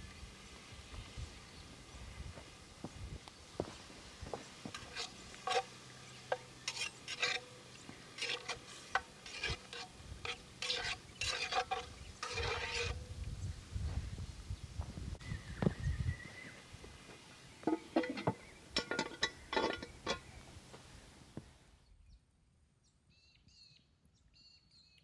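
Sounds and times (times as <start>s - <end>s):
metal utensil scraping a pot: 4.4s - 13.1s, 17.6s - 21.1s.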